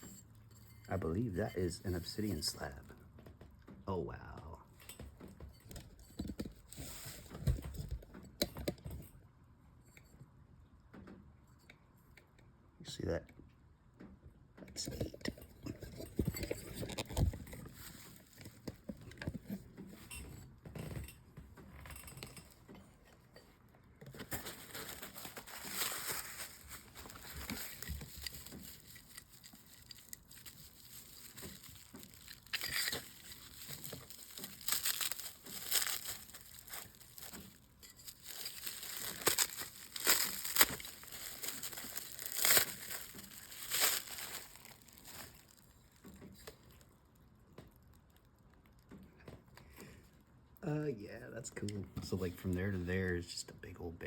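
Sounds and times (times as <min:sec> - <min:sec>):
packing material crinkling and tearing: 0:06.3 - 0:08.0, 0:15.8 - 0:19.6, 0:24.1 - 0:46.9.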